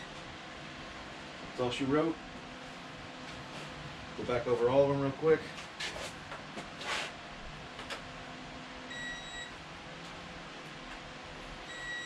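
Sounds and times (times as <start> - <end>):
torque wrench beep: 8.9 - 9.5, 11.7 - 12.0.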